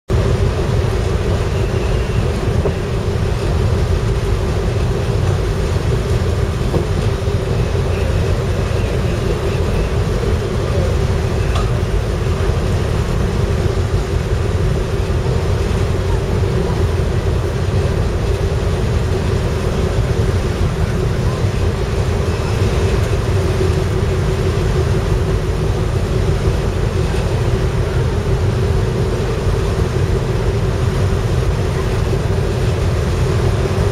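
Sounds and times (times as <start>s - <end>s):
constant machinery hum: 0.1s - 33.9s
machinery low rumble: 0.1s - 33.9s.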